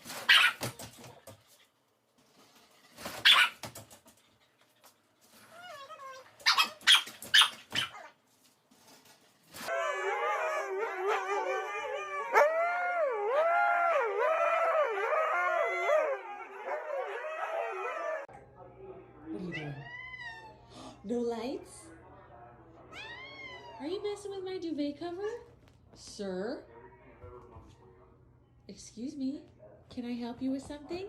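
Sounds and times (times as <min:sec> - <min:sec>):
dog barking: 0:00.3 - 0:00.7, 0:03.2 - 0:03.6
dog howling: 0:09.7 - 0:18.3.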